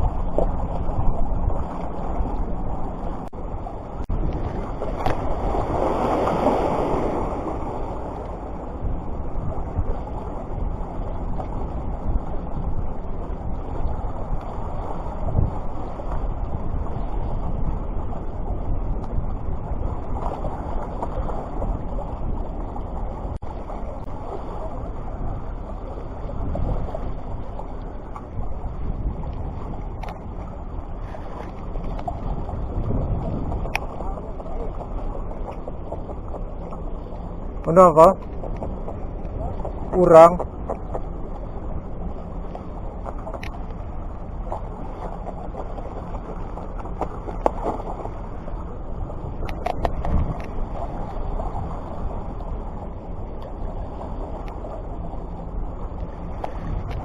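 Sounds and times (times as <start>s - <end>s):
surf rushing: 0.0s - 57.0s
wind buffeting microphone: 0.0s - 57.0s
faint clicks: 33.6s - 34.0s, 42.5s - 43.8s, 49.4s - 50.6s, 56.0s - 57.0s.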